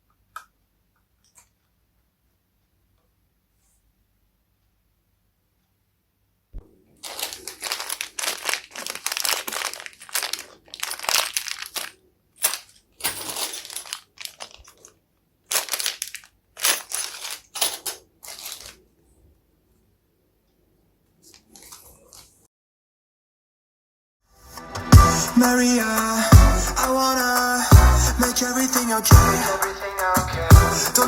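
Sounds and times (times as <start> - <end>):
packaging crinkling: 6.9 - 18.8.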